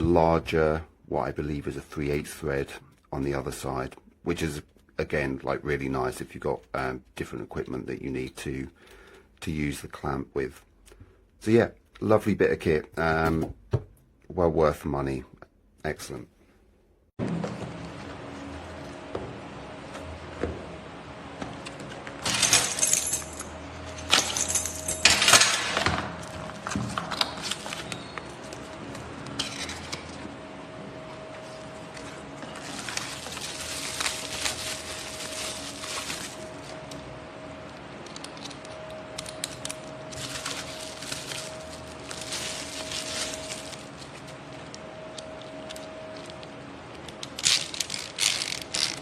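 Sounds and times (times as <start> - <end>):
faint hum: 0.0 - 49.0
metal parts clinking: 22.2 - 26.0, 29.3 - 30.2, 38.0 - 44.2, 47.1 - 49.0.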